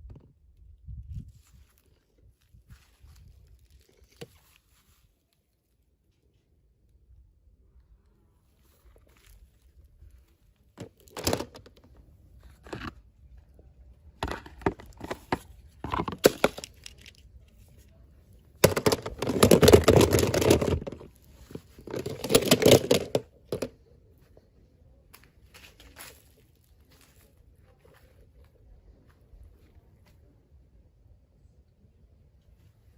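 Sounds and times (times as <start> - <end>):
packaging rustling: 18.6 - 23.7.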